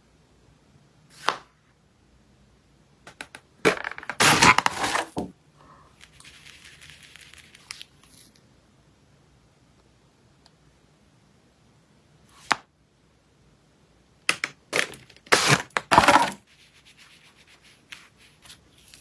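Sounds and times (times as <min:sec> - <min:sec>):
packaging crinkling: 0:03.7 - 0:05.2, 0:06.0 - 0:08.3
packaging tearing: 0:03.7 - 0:05.2, 0:14.8 - 0:16.4.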